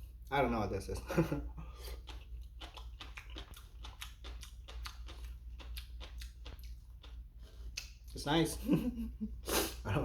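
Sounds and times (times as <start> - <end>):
crunchy chewing: 1.8 - 8.2.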